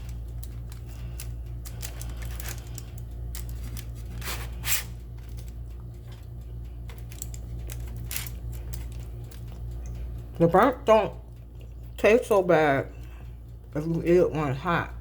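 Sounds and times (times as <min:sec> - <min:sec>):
cookies breaking with rustling: 0:00.0 - 0:10.2
steady low hum: 0:00.0 - 0:15.0.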